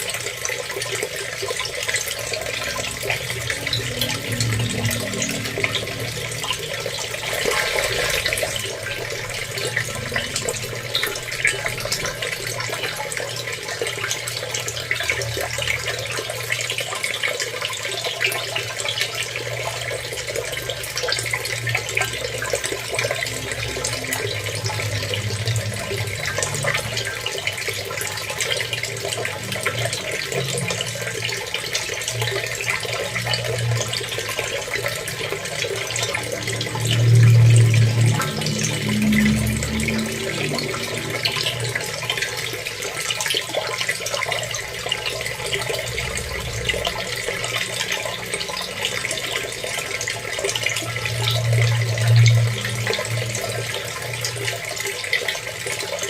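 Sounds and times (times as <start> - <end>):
water running: 0.0 - 56.0
low rumble: 2.4 - 12.6, 35.6 - 42.7.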